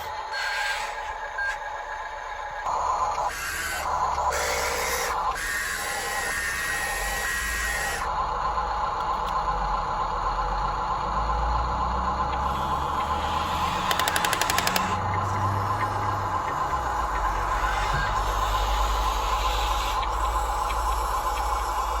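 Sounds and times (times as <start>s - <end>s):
small electric motor whining: 0.0s - 1.8s, 2.7s - 8.2s, 12.3s - 22.0s
rapid clicking: 13.6s - 15.1s.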